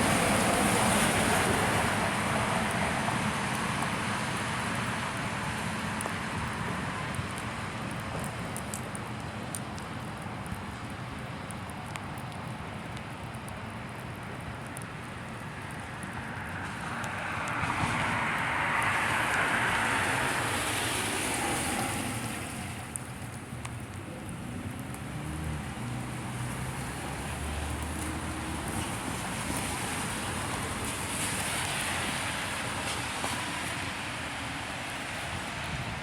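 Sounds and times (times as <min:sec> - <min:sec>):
tyre hiss on wet road: 0:00.0 - 0:08.8, 0:15.8 - 0:36.0
vehicle passing: 0:24.7 - 0:34.1.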